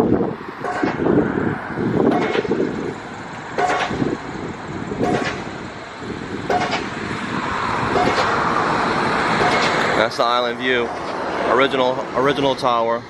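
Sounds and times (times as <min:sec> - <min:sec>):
traffic noise: 0:00.0 - 0:13.0
wind: 0:00.0 - 0:13.0
pile driver hammer blows: 0:02.1 - 0:02.7, 0:03.5 - 0:04.2, 0:05.0 - 0:05.6, 0:06.5 - 0:07.0, 0:07.9 - 0:08.4, 0:09.3 - 0:10.0.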